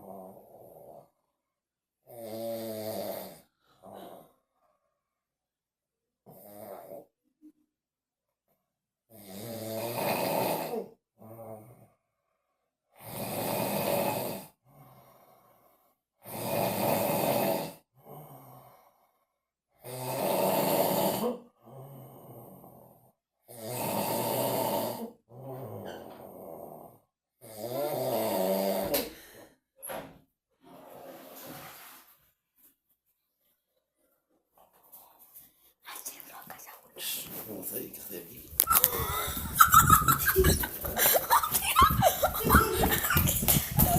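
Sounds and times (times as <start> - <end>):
man snoring: 2.1 - 4.3, 6.3 - 7.0, 9.1 - 11.9, 13.0 - 15.2, 16.2 - 18.9, 19.8 - 29.1.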